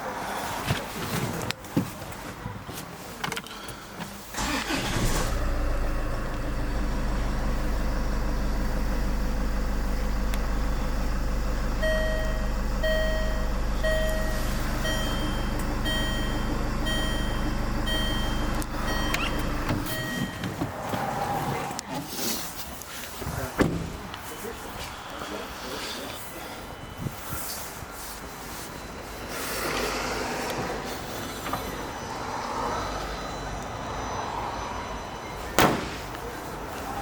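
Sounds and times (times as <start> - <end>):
car engine starting and idling: 4.2 - 22.0
dashboard warning chime beeping: 10.2 - 20.8
clicks: 13.6 - 20.6.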